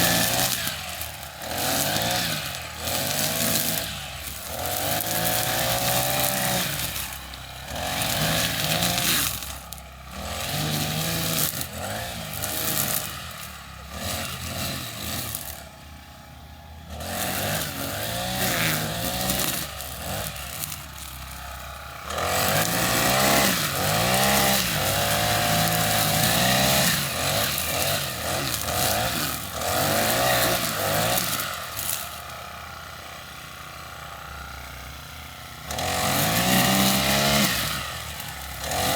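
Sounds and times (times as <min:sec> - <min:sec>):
lawn mower engine running: 0:00.0 - 0:38.9.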